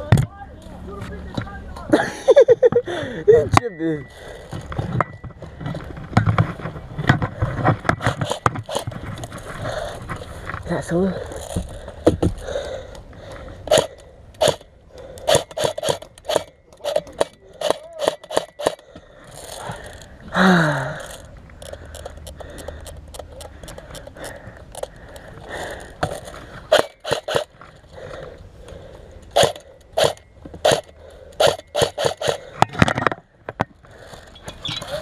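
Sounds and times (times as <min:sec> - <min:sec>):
gear clicks snaps and crunches: 0:13.7 - 0:27.9
person grunting: 0:20.3 - 0:21.2.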